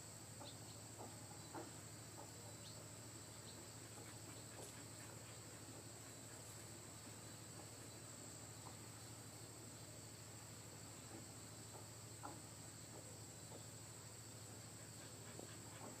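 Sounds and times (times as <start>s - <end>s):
insects chirring: 0.0s - 16.0s
low steady hum: 0.0s - 16.0s
faint ticks: 0.4s - 2.8s, 11.1s - 13.8s.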